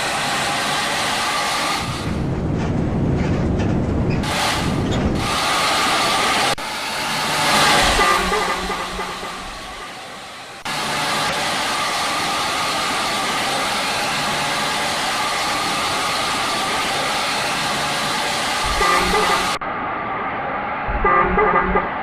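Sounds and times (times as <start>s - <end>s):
bus engine and road noise: 0.0s - 22.0s
musical bus horn: 7.8s - 9.7s, 18.6s - 19.6s, 20.9s - 22.0s.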